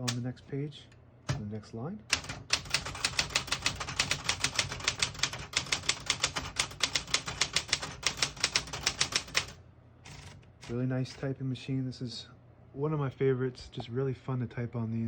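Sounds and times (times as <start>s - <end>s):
manual typewriter typing: 2.1s - 11.3s.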